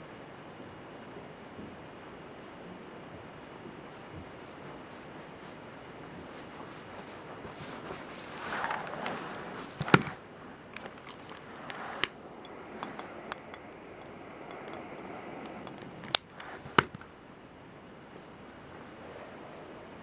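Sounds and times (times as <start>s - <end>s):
steady background hiss: 0.0s - 20.0s
sharp clicks and knocks: 9.8s - 14.9s.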